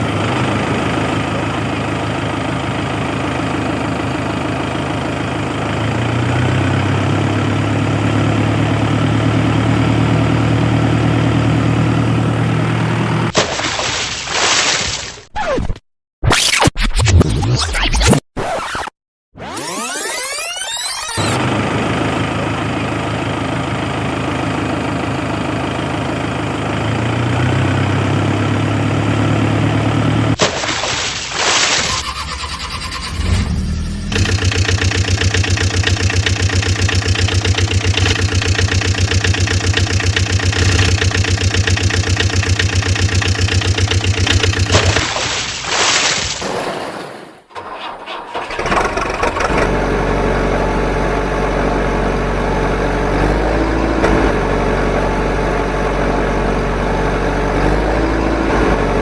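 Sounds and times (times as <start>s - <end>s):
engine idling: 0.0s - 13.3s, 21.4s - 30.4s, 31.9s - 45.2s, 47.5s - 57.4s
vehicle engines starting: 29.0s - 45.5s, 46.4s - 59.0s.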